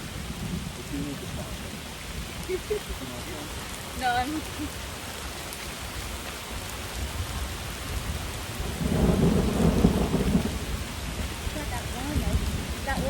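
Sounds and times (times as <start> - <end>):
steady rain: 0.0 - 13.0
thunder rumbling: 7.2 - 13.0.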